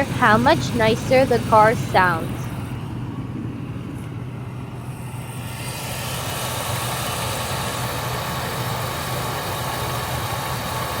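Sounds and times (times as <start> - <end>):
engine idling: 0.0 - 11.0
hiss: 4.9 - 11.0.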